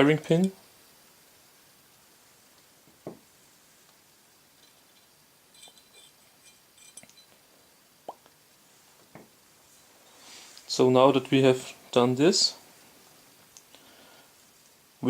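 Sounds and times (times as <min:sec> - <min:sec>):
soft knock: 0:03.0 - 0:03.2
small steel parts clinking: 0:04.5 - 0:07.5.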